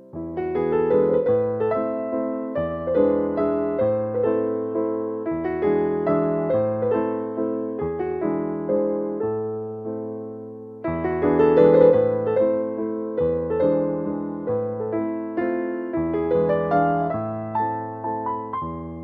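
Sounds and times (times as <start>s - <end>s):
gentle piano music: 0.0s - 19.0s.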